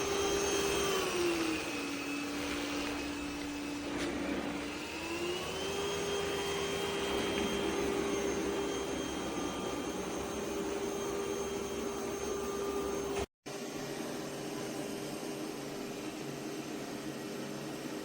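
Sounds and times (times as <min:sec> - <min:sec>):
robot vacuum motor whirring: 0:00.0 - 0:13.3.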